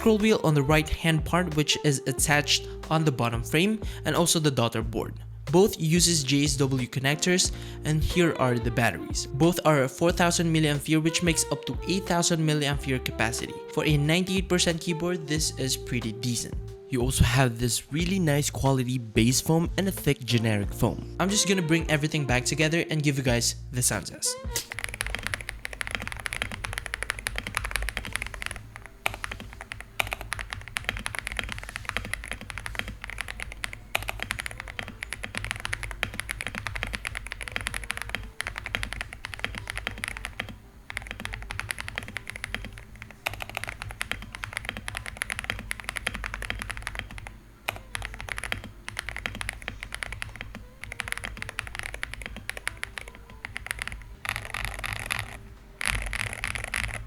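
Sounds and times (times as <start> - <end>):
mechanical keyboard key clacks: 24.6 - 57.0.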